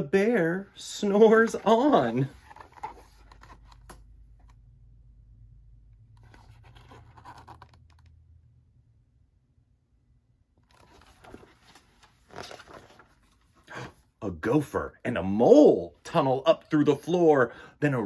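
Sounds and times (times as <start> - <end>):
low steady hum: 0.0 - 18.0
paper pages rustling: 1.4 - 4.0, 6.2 - 8.1, 10.6 - 13.7.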